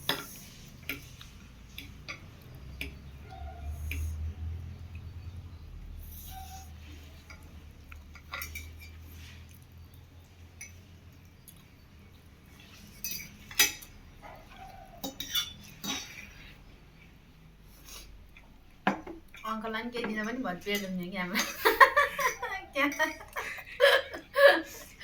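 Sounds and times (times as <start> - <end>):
cutlery clinking on plates: 8.0 - 9.0, 12.6 - 14.0, 14.9 - 16.3.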